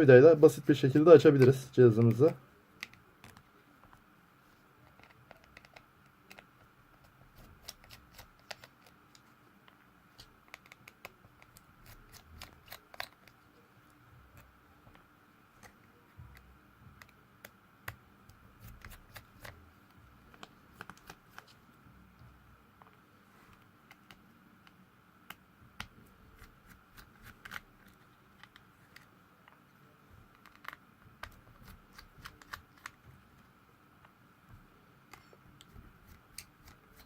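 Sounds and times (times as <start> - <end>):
plastic and metal handling clicks: 30.3 - 33.0.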